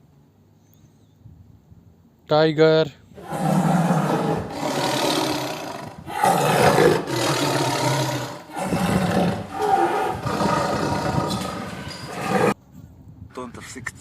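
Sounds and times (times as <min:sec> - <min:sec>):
tiger roaring: 0:03.2 - 0:12.6.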